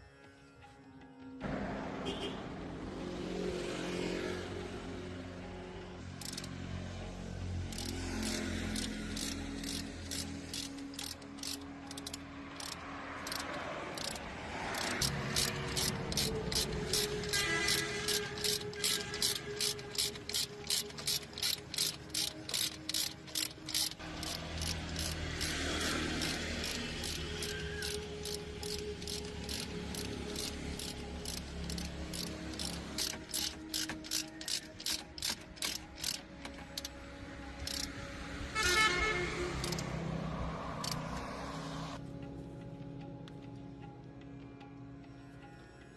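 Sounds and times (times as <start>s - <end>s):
steady mechanical clicking: 6.2s - 6.6s, 7.6s - 38.1s, 39.6s - 39.9s, 40.8s - 41.2s.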